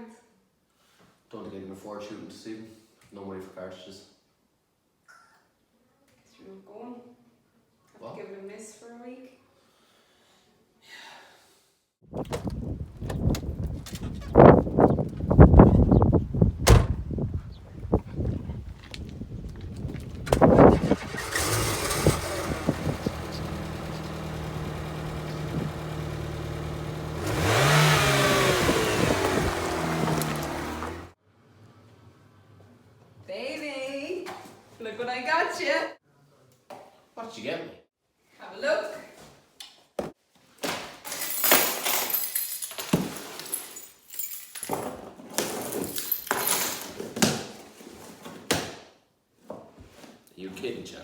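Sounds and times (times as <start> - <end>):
car engine starting and idling: 20.3 - 31.2
car engine revving: 20.4 - 31.2.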